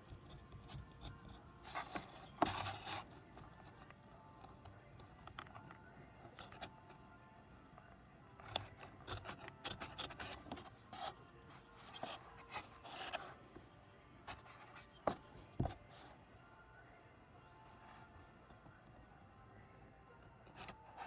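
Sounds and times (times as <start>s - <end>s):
hand tool scraping wood: 8.5s - 13.4s.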